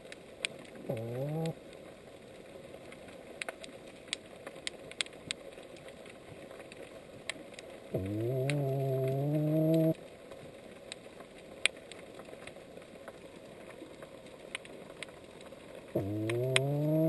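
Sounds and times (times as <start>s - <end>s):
sharp clicks: 8.0s - 10.0s, 16.0s - 17.0s.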